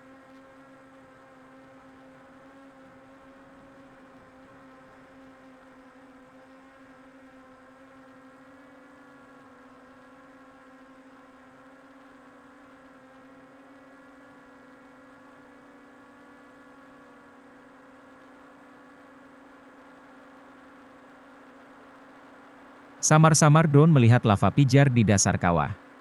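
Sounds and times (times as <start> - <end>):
faint steady hum: 23.0 - 25.8.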